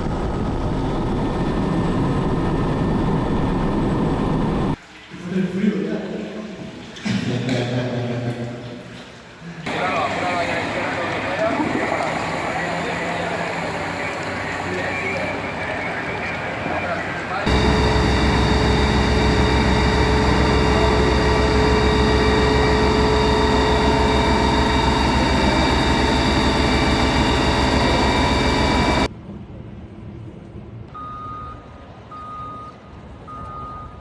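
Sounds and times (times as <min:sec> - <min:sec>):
heavy vehicle engine running: 0:09.7 - 0:29.1
reversing alarm beeping: 0:17.5 - 0:29.1.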